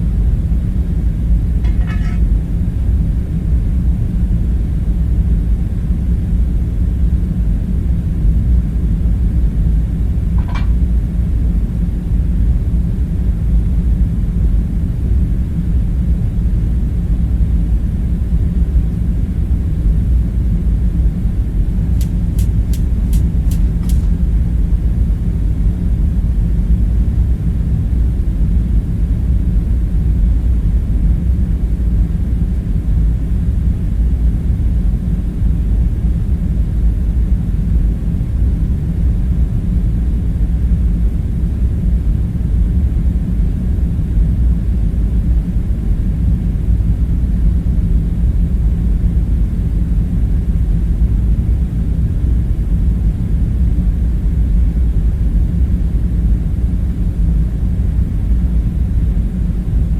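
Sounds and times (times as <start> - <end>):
low room rumble: 0.0 - 59.9
short clink: 1.6 - 2.3, 10.4 - 10.9, 22.0 - 24.2
sharp clicks: 22.0 - 24.2.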